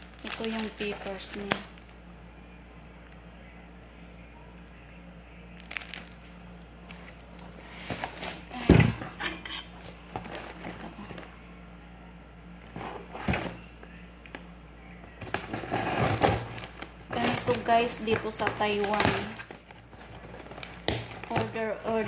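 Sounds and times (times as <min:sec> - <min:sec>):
packaging rustling and clattering: 0:00.0 - 0:01.9, 0:05.6 - 0:06.3, 0:06.9 - 0:11.3, 0:12.6 - 0:14.4, 0:15.2 - 0:22.0
faint steady hum: 0:00.0 - 0:22.0.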